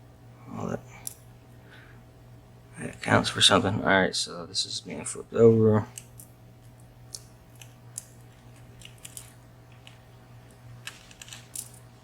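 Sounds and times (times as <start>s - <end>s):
small pins clicking on surface: 5.9s - 11.9s.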